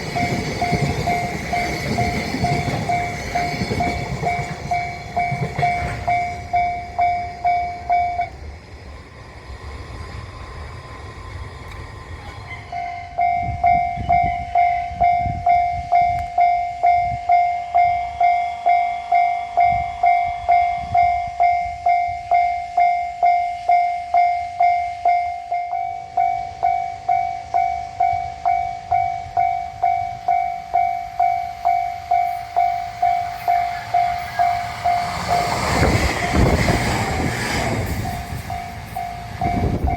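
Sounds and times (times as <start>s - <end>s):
railroad crossing bell ringing: 0.0s - 8.4s, 12.2s - 39.9s
train wheels clacking on rails: 0.0s - 8.4s, 25.1s - 39.9s.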